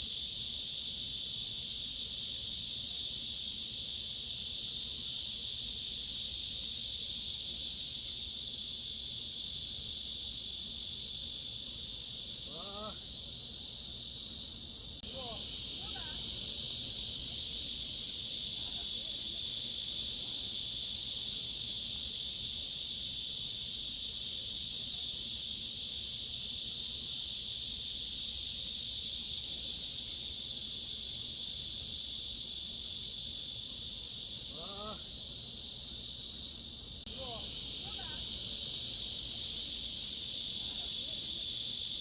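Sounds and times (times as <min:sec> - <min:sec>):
cicadas buzzing: 0:00.0 - 0:42.0.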